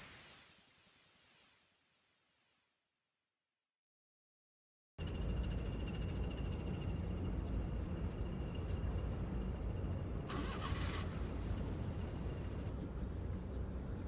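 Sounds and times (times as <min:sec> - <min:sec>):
faint high whine: 0:05.0 - 0:14.0
low engine rumble: 0:05.0 - 0:14.0.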